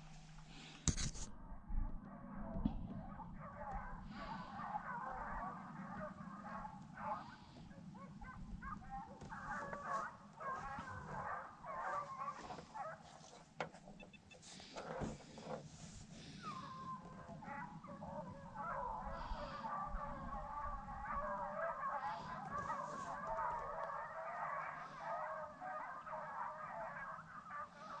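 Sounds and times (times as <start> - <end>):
hounds baying: 1.9 - 28.0.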